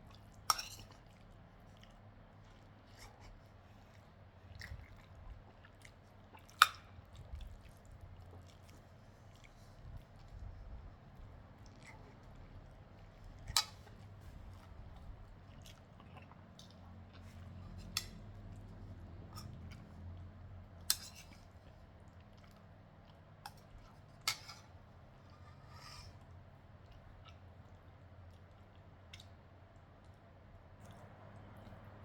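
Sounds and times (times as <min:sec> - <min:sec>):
person chewing: 0:00.0 - 0:10.5, 0:11.2 - 0:20.1.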